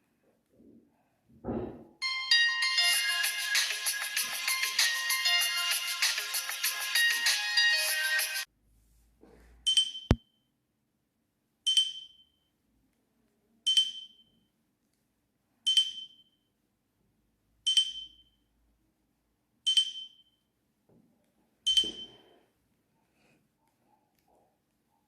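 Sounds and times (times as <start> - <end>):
phone alert ping: 21.7 - 22.2.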